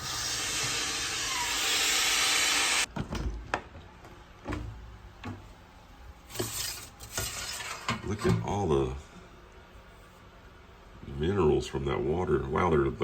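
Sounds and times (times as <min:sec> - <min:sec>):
air hissing into vacuum chamber: 0:00.0 - 0:02.9.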